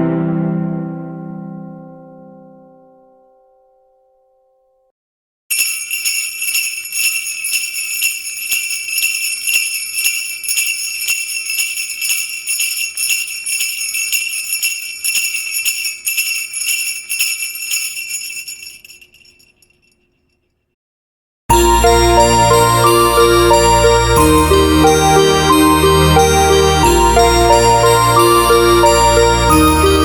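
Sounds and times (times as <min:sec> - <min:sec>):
sleigh bells shaken: 0:05.5 - 0:20.1, 0:21.6 - 0:30.0.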